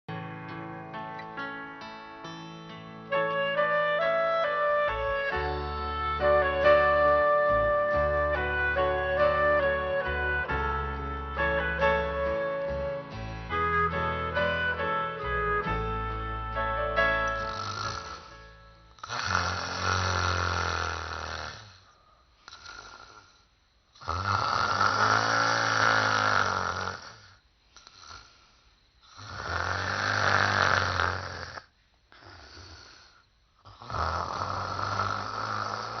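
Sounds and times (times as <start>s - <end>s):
woman snoring: 17.3s - 36.0s
soft breaths: 17.4s - 33.9s.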